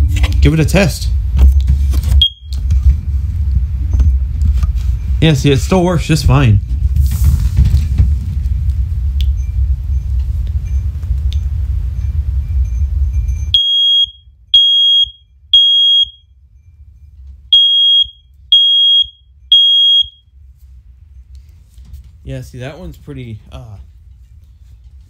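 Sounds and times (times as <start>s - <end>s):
smoke alarm beeping: 2.2s - 2.6s, 9.3s - 20.4s
loud low rumble: 2.6s - 13.6s.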